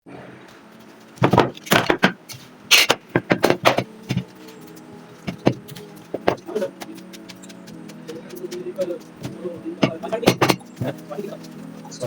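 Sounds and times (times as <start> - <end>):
sharp knocks and clatter: 1.2 - 4.4, 9.8 - 11.0.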